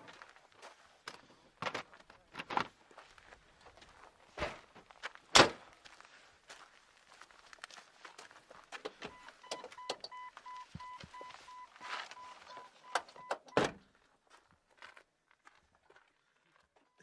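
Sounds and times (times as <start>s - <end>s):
car warning chime beeping: 9.0s - 13.7s
car door shutting: 13.0s - 13.8s.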